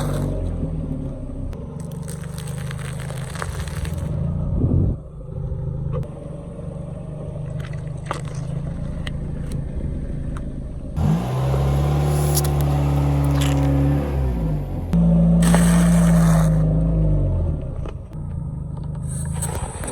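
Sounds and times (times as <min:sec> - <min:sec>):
car engine running: 0:00.0 - 0:19.9
sharp cracks: 0:01.8 - 0:04.2.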